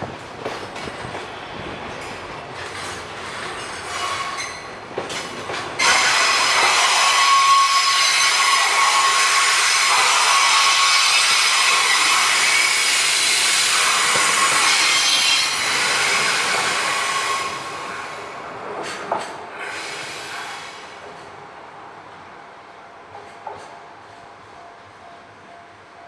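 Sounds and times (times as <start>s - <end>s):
freight train rolling past: 0.0s - 26.0s
high wheel squeal: 5.8s - 18.0s.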